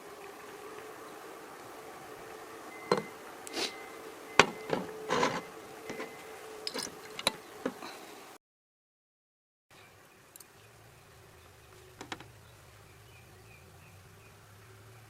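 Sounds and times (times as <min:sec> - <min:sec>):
objects clicking and knocking: 0:02.9 - 0:03.1, 0:04.4 - 0:07.8.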